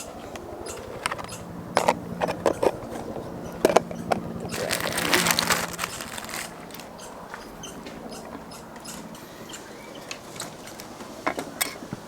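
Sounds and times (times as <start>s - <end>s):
crinkly rustling: 3.6s - 7.0s.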